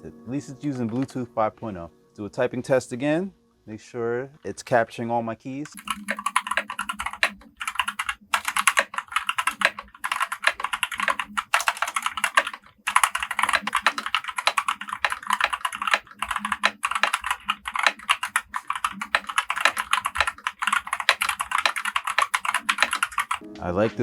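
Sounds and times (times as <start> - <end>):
fast typing on mechanical keyboard: 5.7 - 23.4.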